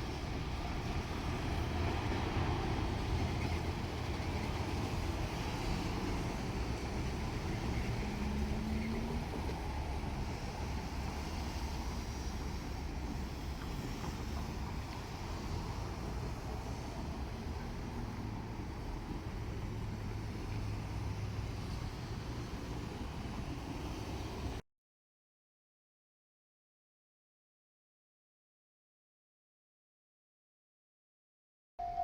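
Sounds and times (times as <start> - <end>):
diesel railcar rumble: 0.0 - 24.6.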